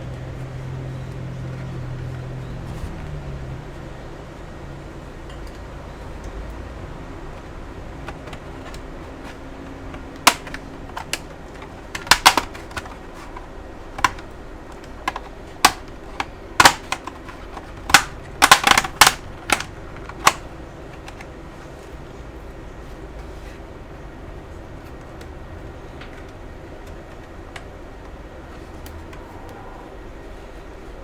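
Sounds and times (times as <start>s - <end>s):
sharp plastic clicks and snaps: 7.3s - 21.4s.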